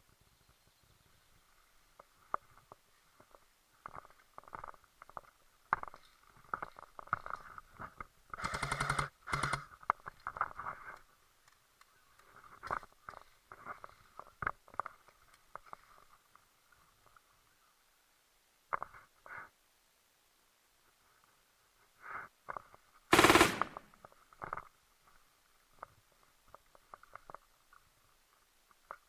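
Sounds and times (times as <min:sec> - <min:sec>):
airsoft gun full-auto bursts: 0:08.4 - 0:09.6, 0:23.1 - 0:23.8.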